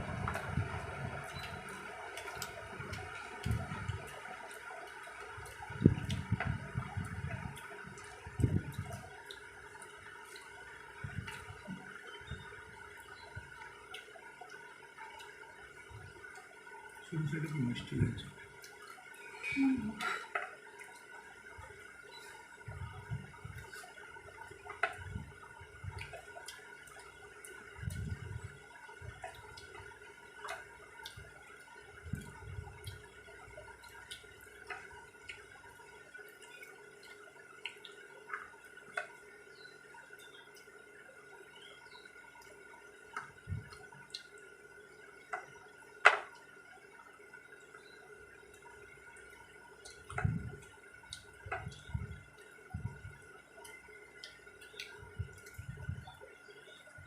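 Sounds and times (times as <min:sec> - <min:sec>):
electric fan humming: 0:00.0 - 0:57.0
wet chewing and smacking: 0:00.1 - 0:19.4, 0:20.0 - 0:57.0
soft low thumps: 0:05.4 - 0:09.2, 0:11.0 - 0:12.5, 0:22.6 - 0:23.8, 0:27.8 - 0:29.8, 0:49.9 - 0:50.7, 0:51.4 - 0:53.2, 0:55.0 - 0:56.3.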